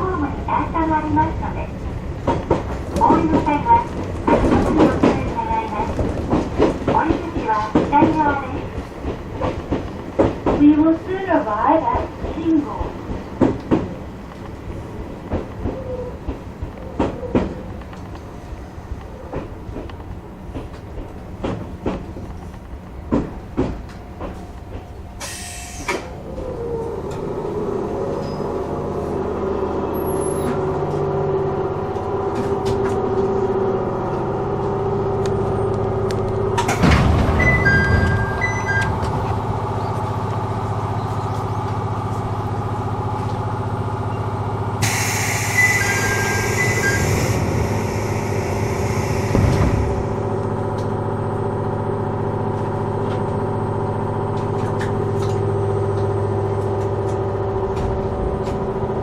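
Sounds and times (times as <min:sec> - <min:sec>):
train electrical hum: 0:00.0 - 0:59.0
compressed air burst: 0:25.2 - 0:26.0, 0:44.8 - 0:46.6, 0:47.2 - 0:50.1
air hissing: 0:25.2 - 0:26.1, 0:44.8 - 0:50.1
two-note beeps: 0:37.4 - 0:39.0.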